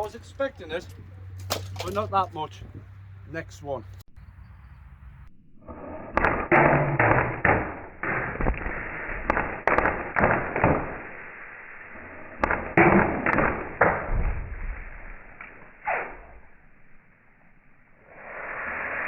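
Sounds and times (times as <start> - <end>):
airsoft gun shots: 1.4 - 2.1, 6.2 - 11.3, 12.4 - 15.2.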